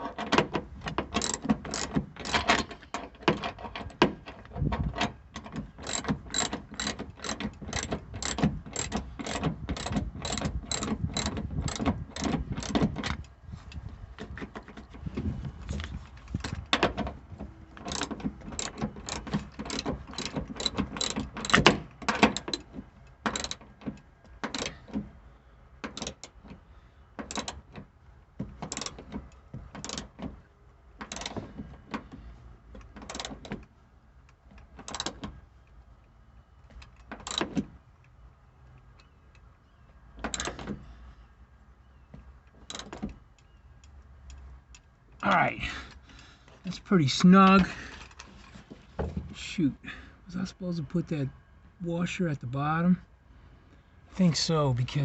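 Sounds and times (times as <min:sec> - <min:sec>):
ratchet wrench clicking: 0:01.2 - 0:02.4, 0:05.8 - 0:12.8, 0:17.9 - 0:21.7, 0:23.3 - 0:23.6.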